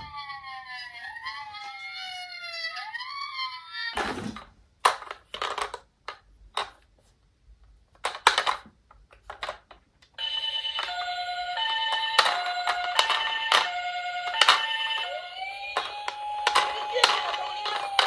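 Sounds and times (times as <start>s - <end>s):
plastic clatters and knocks: 4.0s - 6.8s, 7.9s - 9.9s, 11.9s - 18.0s
beeping toy siren: 10.2s - 18.0s
toy electronic siren: 10.2s - 18.0s.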